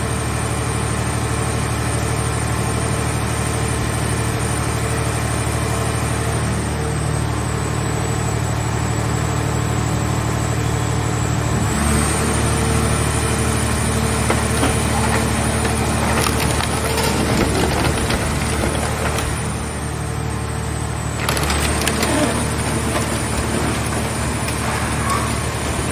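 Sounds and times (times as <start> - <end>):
hydraulic power unit running: 8.4 - 25.9
car shell crackling and creaking: 14.2 - 19.6.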